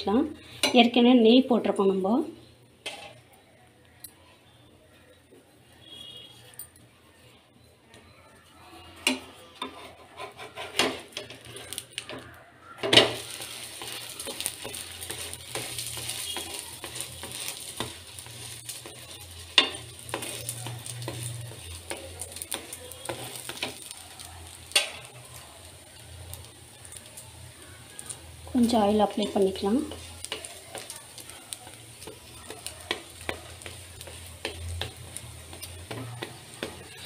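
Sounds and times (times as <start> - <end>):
oil sizzling on a hot pan: 9.0 - 37.0
spatula knocking on a pan: 29.9 - 37.0.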